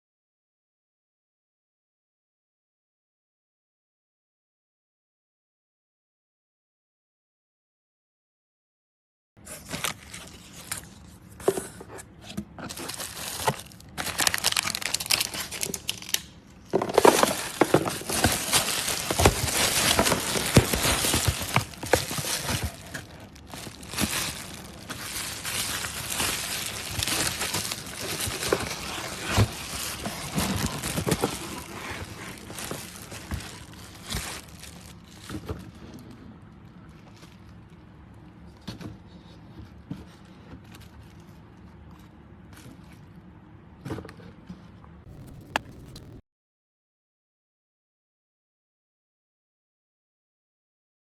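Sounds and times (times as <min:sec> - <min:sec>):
rustling and crinkling: 0:09.5 - 0:36.2, 0:45.1 - 0:46.2.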